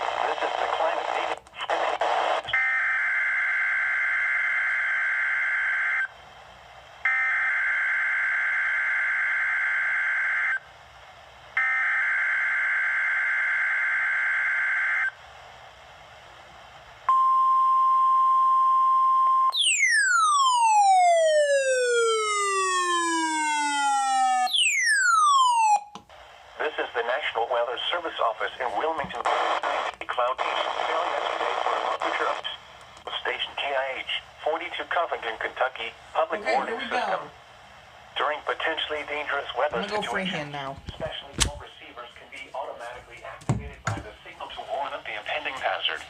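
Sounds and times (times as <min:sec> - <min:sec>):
steady warning alarm tone: 0:17.1 - 0:26.0.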